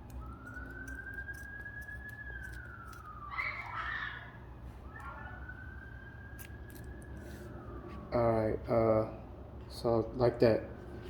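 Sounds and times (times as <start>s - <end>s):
scissors cutting rubber hose: 0.0s - 3.3s
siren wailing: 0.0s - 9.2s.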